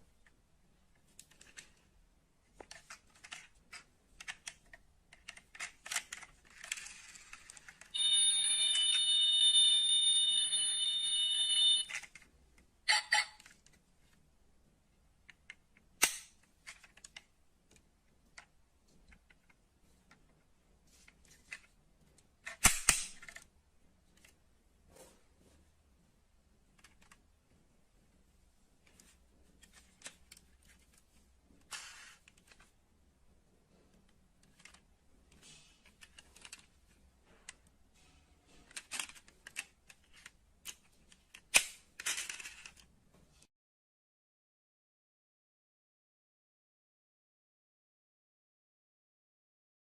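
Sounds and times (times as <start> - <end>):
metal model cars clicking: 38.7 - 42.9.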